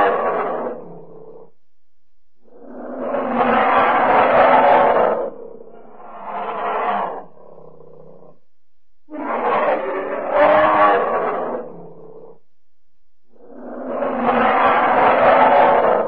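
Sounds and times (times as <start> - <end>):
bear growling: 2.4 - 8.4, 9.1 - 12.4, 13.3 - 16.0.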